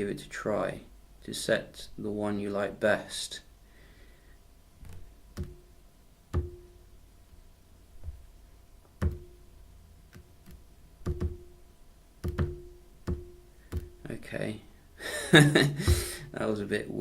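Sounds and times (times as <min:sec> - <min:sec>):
phone button vibration clicks: 0:12.2 - 0:14.0.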